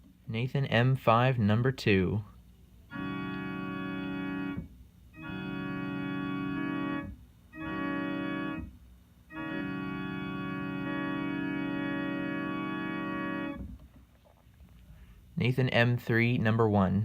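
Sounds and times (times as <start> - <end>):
electronic organ chord imitating train horn: 2.9 - 13.8.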